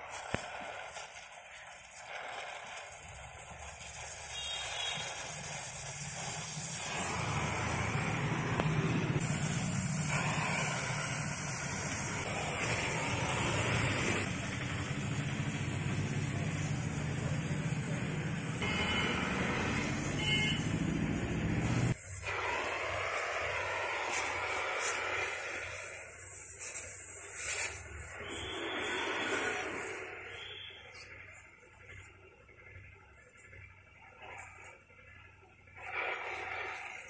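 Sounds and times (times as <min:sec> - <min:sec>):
hiss: 0:00.0 - 0:34.8
motorcycle engine running: 0:06.8 - 0:19.0.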